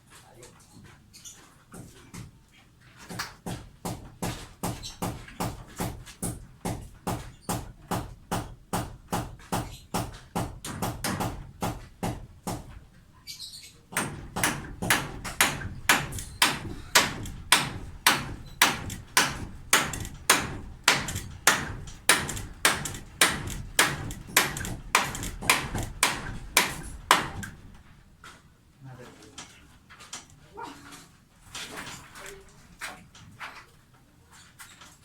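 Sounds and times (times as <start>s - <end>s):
hammer blows: 14.0s - 27.6s.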